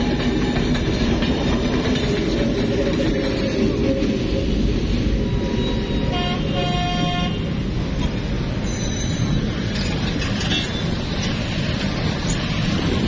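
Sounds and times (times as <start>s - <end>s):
train diesel rumble: 0.0s - 13.0s
train horn: 6.1s - 7.5s.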